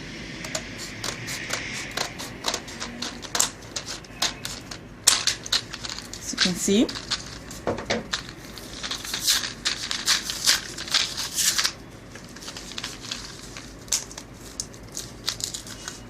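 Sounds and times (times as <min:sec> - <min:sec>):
plastic packaging crinkling: 0:00.5 - 0:16.0
plastic capsules clicking: 0:02.4 - 0:11.7.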